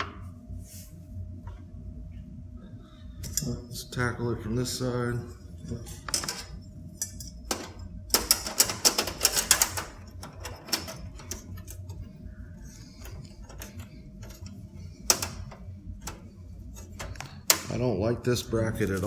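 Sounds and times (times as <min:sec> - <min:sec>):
faint steady hum: 0:00.0 - 0:19.0
small metallic clicks and rattles: 0:06.1 - 0:11.9.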